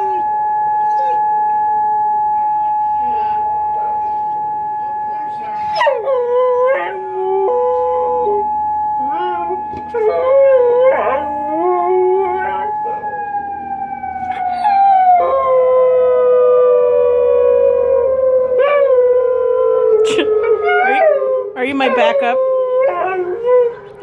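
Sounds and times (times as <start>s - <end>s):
warning siren: 0.0s - 24.0s
dog howling: 5.4s - 24.0s.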